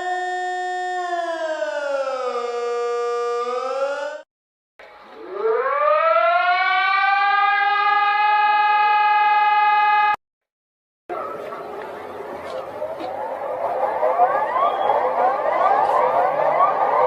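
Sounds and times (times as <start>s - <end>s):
siren winding up to a wail: 0.0s - 4.2s, 5.1s - 10.2s, 13.1s - 17.0s
siren sliding down in pitch: 0.2s - 4.2s, 5.1s - 10.2s, 13.0s - 17.0s.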